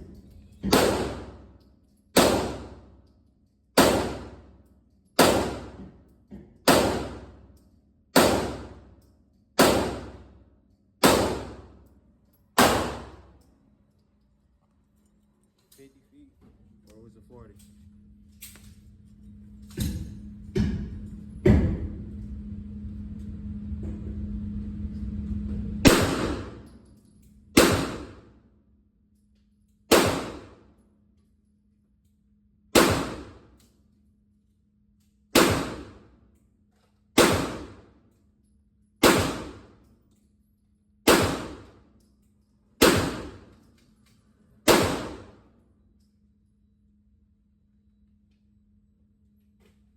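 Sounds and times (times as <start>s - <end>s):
rifle shots with echo: 0.6s - 1.5s, 2.2s - 2.9s, 3.8s - 4.5s, 5.2s - 5.8s, 6.7s - 7.4s, 8.2s - 8.9s, 9.6s - 10.3s, 11.0s - 11.8s, 12.6s - 13.3s, 25.9s - 26.7s, 27.6s - 28.3s, 29.9s - 30.7s, 32.8s - 33.5s, 35.3s - 36.0s, 37.2s - 37.9s, 39.0s - 39.8s, 41.1s - 41.8s, 42.8s - 43.5s, 44.7s - 45.4s.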